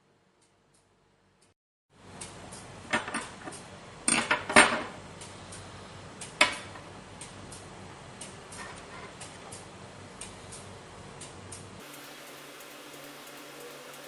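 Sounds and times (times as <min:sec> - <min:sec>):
faint background hiss: 0:11.8 - 0:14.0.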